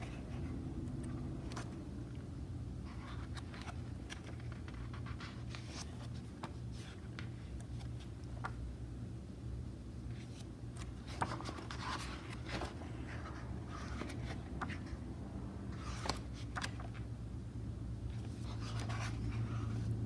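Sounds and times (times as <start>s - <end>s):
book pages turning: 0.0s - 2.1s, 2.8s - 8.6s, 10.1s - 15.0s, 15.7s - 17.1s, 18.1s - 20.0s
steady low hum: 0.0s - 20.0s.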